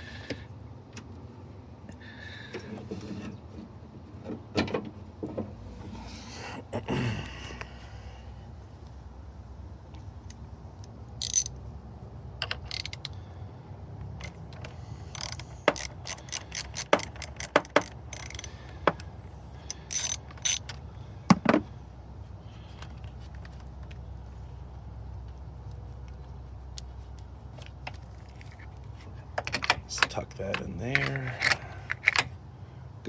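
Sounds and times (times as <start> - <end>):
sharp metal clicks and knocks: 10.3 - 11.6, 12.4 - 13.2, 14.1 - 19.1, 19.7 - 21.5, 27.8 - 32.4
ratchet wrench clicking: 11.2 - 11.6, 12.4 - 13.2, 14.2 - 18.8, 19.6 - 20.8.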